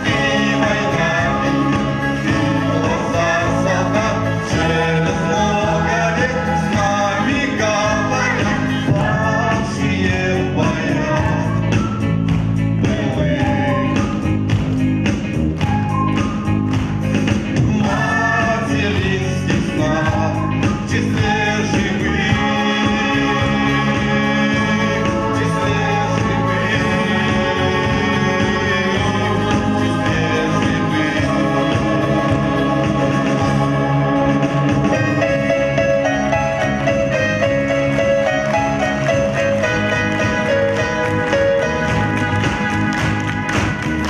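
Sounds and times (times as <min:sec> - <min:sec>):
instrumental accompaniment: 0:00.0 - 0:44.0
person singing: 0:17.6 - 0:33.8.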